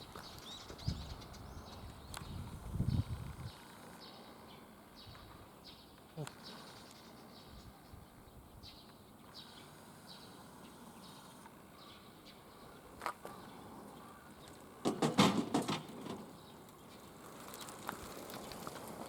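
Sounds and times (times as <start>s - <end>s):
bird chirps: 0.0s - 14.8s
knocks and rattles: 14.8s - 16.3s.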